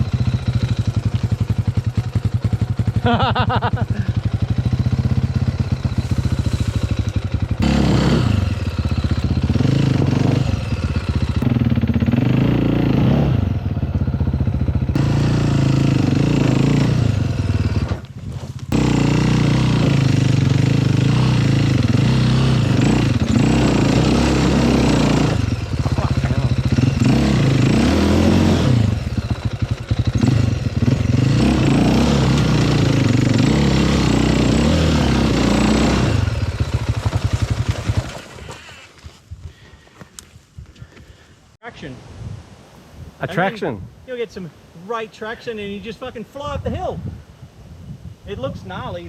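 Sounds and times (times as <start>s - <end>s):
dirt bike engines revving: 0.0s - 38.8s.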